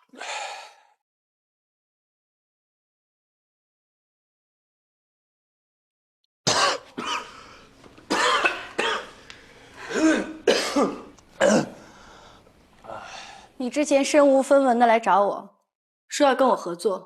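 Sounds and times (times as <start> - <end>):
person coughing harshly: 6.5 - 9.2, 9.8 - 11.8.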